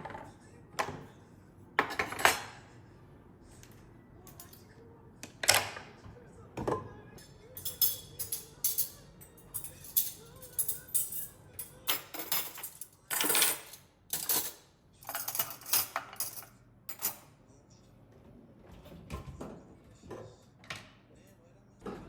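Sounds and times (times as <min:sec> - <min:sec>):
kitchenware clinking and knocking: 0:01.8 - 0:02.6, 0:12.0 - 0:17.3.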